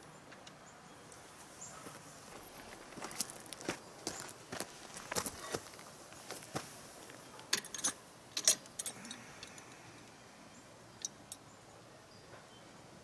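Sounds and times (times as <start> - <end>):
metal latch clinking: 7.4 - 9.7.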